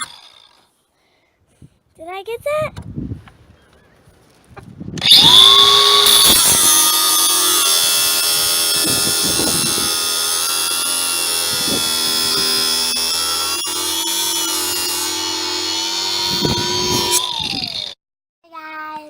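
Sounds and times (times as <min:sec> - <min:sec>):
small electric motor whining: 0:00.0 - 0:00.6, 0:05.0 - 0:18.0.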